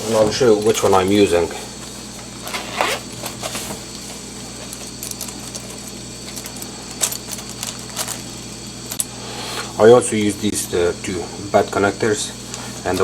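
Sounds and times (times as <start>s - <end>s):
refrigerator compressor humming: 0.0s - 13.0s
small parts clicking and rattling: 4.6s - 9.1s.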